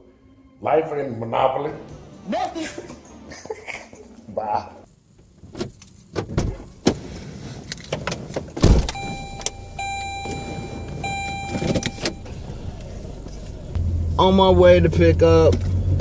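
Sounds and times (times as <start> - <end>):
car door shutting: 5.4 - 13.6
car warning chime: 8.9 - 12.7.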